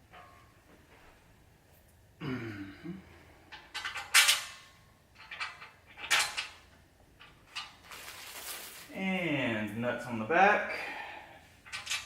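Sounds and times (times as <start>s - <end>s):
metallic clinks and rattles: 3.5s - 8.8s, 11.6s - 12.0s.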